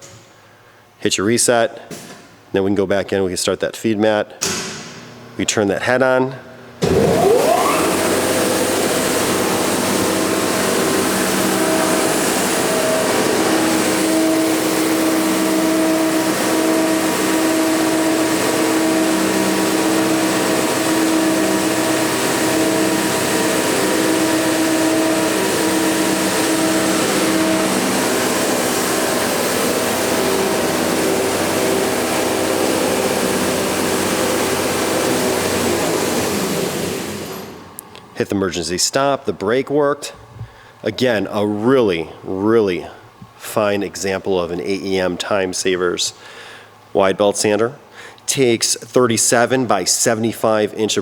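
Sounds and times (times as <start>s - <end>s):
belt sander whirring: 6.6s - 38.2s.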